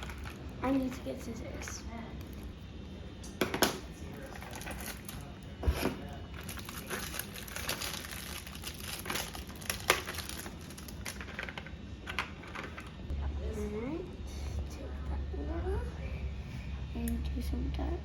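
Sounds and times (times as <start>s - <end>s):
packaging crinkling: 4.2s - 11.7s.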